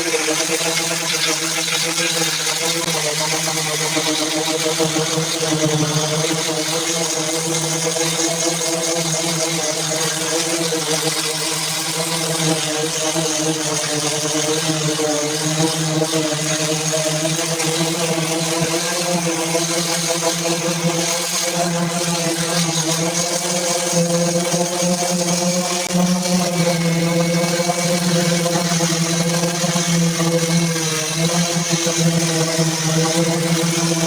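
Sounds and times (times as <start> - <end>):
power sander running: 0.0 - 34.0.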